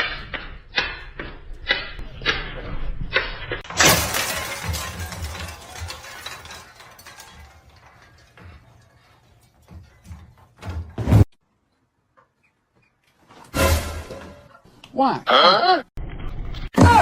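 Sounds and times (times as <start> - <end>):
crash: 3.5 - 11.3, 13.4 - 14.6
clattering and rattling: 3.6 - 11.3.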